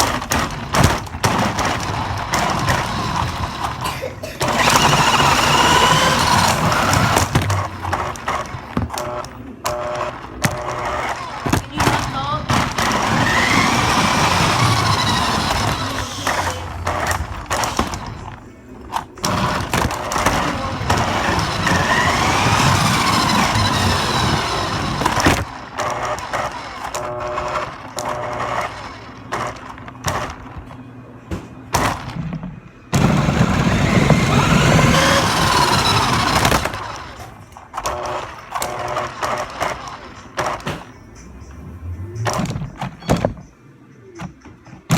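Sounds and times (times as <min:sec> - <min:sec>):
electric rc car motor whine: 0:00.0 - 0:03.8, 0:04.4 - 0:18.4, 0:19.2 - 0:29.8, 0:33.0 - 0:40.6
tyre noise: 0:00.0 - 0:30.8, 0:31.4 - 0:44.9.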